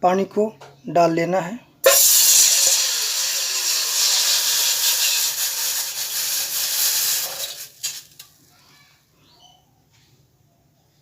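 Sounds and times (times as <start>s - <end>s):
water hissing on hot metal: 1.8s - 8.3s.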